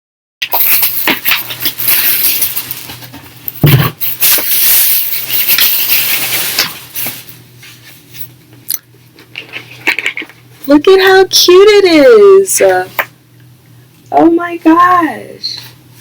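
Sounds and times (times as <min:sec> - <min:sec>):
packaging rustling and scraping: 0:05.2 - 0:08.4.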